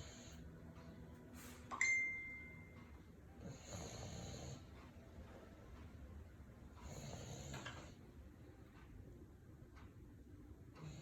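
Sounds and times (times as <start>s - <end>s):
metallic ding: 1.7s - 2.8s
dog snoring: 3.4s - 4.8s, 6.8s - 8.0s, 10.8s - 11.0s.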